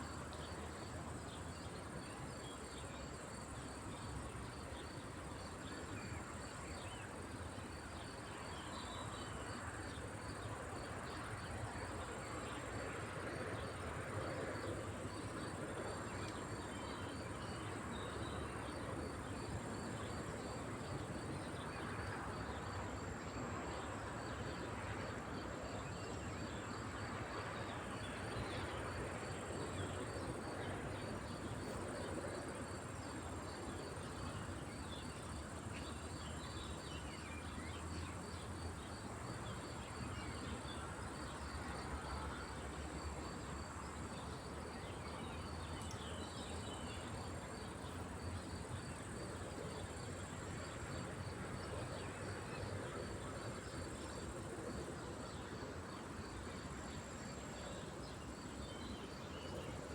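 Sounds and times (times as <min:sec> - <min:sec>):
cricket chirping: 0:00.0 - 0:59.9.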